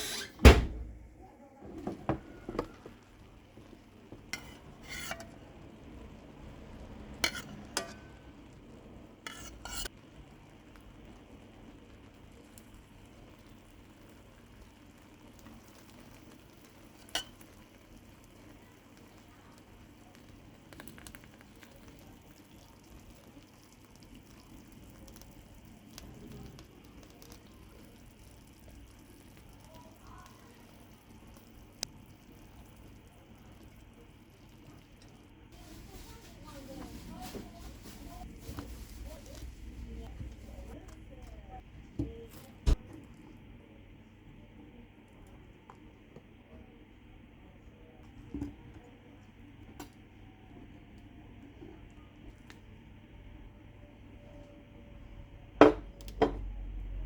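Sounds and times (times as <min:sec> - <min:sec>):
pastry sizzling hiss: 0:04.3 - 0:40.8.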